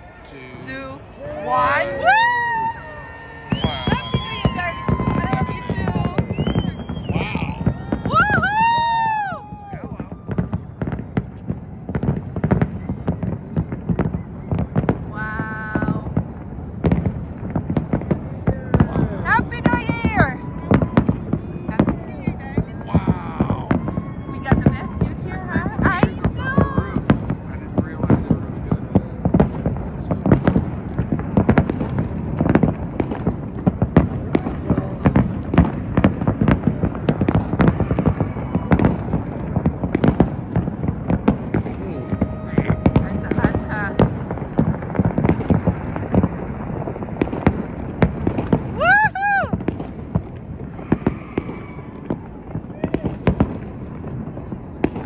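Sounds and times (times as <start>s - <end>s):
fireworks bangs and crackles: 0.0s - 55.0s
person shouting: 1.2s - 3.0s, 7.1s - 10.0s, 41.7s - 44.0s
low rumble of booms: 3.5s - 48.8s.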